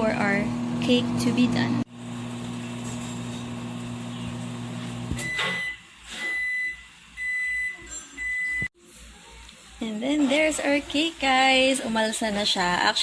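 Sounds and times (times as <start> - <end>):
microwave oven humming: 0.0 - 8.7.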